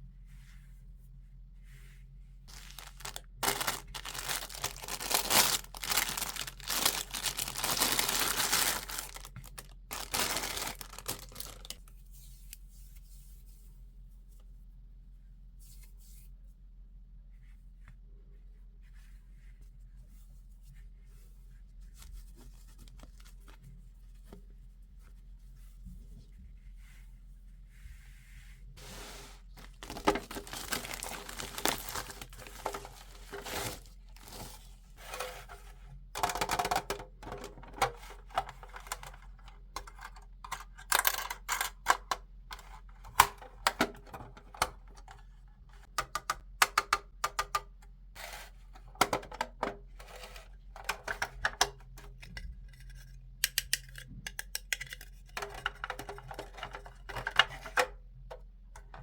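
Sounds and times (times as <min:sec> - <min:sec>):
plastic packaging crinkling and tearing: 0:02.5 - 0:11.8, 0:29.6 - 0:35.2
clicks of small plastic pieces: 0:38.8 - 0:42.2, 0:50.8 - 0:57.5.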